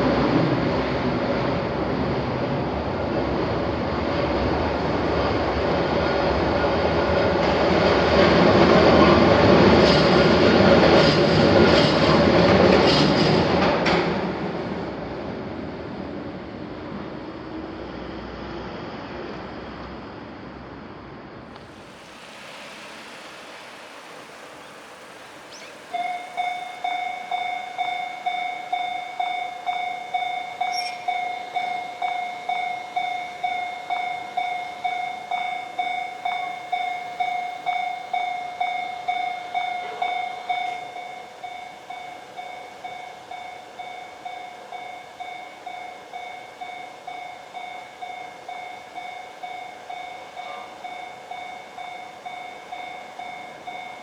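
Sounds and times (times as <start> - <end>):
railroad crossing warning bell: 21.6 - 54.0.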